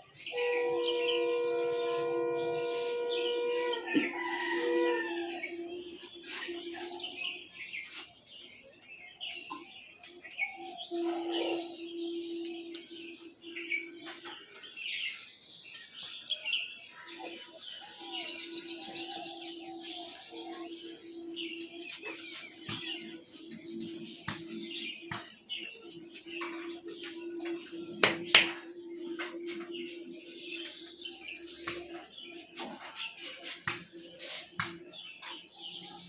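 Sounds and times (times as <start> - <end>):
small birds chirping: 4.9 - 36.0.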